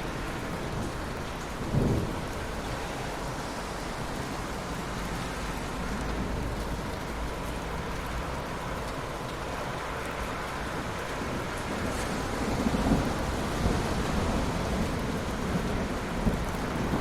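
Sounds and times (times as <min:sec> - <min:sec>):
steady rain hissing: 0:00.0 - 0:17.0.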